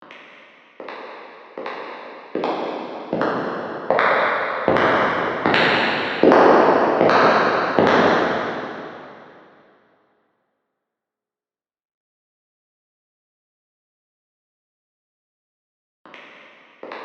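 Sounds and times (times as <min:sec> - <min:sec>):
echoing footsteps: 0:00.1 - 0:09.4.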